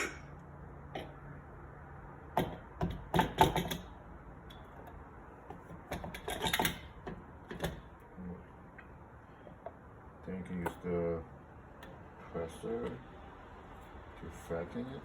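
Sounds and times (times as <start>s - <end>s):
espresso gear clicks and knocks: 2.4s - 3.9s, 4.6s - 7.9s.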